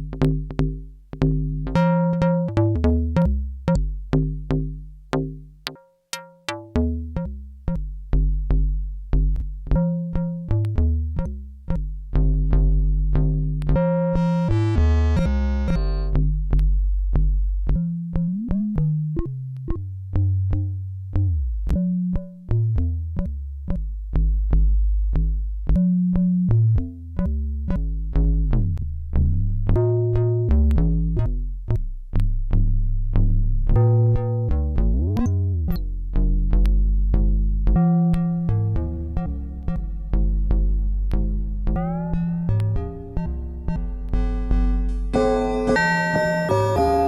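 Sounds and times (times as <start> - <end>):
low synth bass: 0.0 - 5.6, 6.8 - 47.0
struck synthesizer notes ringing: 13.7 - 16.3, 37.8 - 47.0
bright ringing chord: 44.3 - 47.0.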